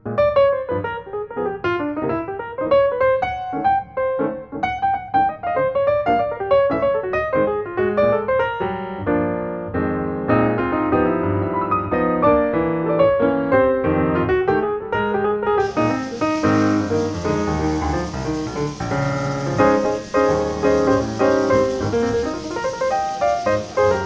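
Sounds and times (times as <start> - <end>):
hiss-like layer: 15.6 - 24.0
piano music: 15.6 - 24.0.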